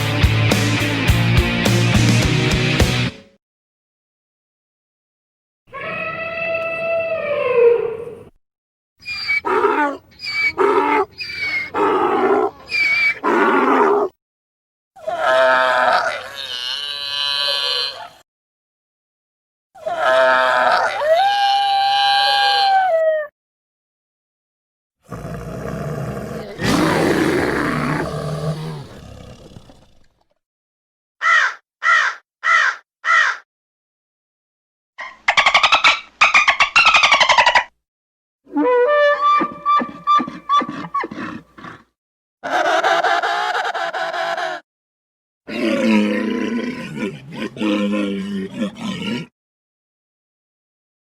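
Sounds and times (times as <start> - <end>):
animal braying cries: 9.0 - 14.1, 26.6 - 29.0, 38.6 - 42.8
deep animal roar: 25.1 - 30.2, 45.5 - 49.3
harsh bird caws: 31.2 - 33.5.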